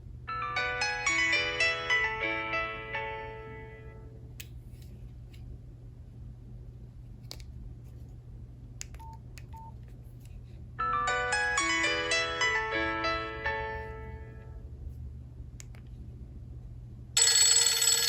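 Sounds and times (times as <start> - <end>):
low steady hum: 0.0 - 17.7
phone ringtone notes: 0.3 - 3.7, 10.8 - 13.4, 17.2 - 18.0
polyphonic ringtone melody: 0.3 - 3.8, 10.8 - 13.7, 17.2 - 18.0.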